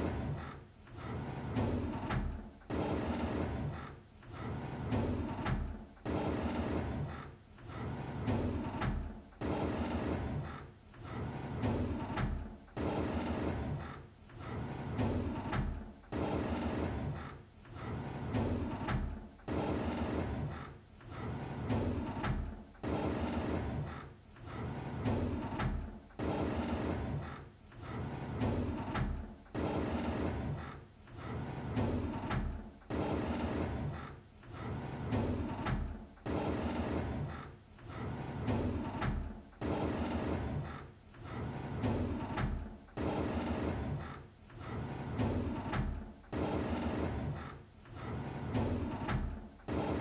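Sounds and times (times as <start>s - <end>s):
drawer sliding open: 16.4s - 50.0s.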